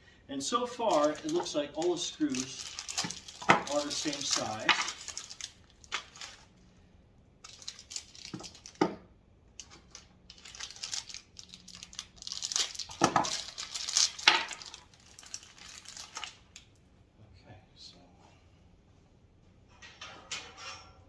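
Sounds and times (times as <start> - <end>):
metal screws clinking: 0.8 - 6.5, 7.4 - 8.8, 9.6 - 16.8.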